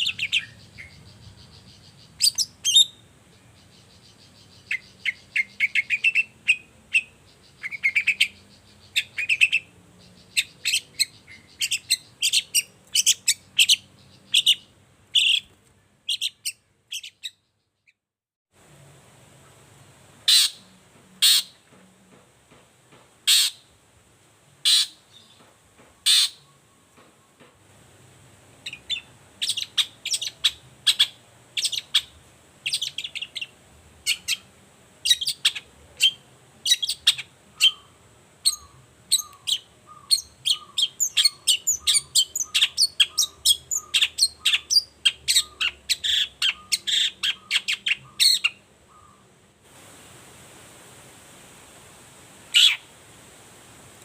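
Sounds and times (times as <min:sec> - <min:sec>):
bird chattering: 0:00.0 - 0:03.0, 0:03.6 - 0:15.5, 0:20.3 - 0:20.6, 0:26.0 - 0:26.5, 0:28.7 - 0:33.5, 0:34.1 - 0:37.9, 0:38.5 - 0:49.2, 0:52.6 - 0:52.8
loud bird calls: 0:20.3 - 0:21.6, 0:23.3 - 0:23.6, 0:24.6 - 0:25.4, 0:26.0 - 0:26.7, 0:28.7 - 0:49.3, 0:52.5 - 0:52.9.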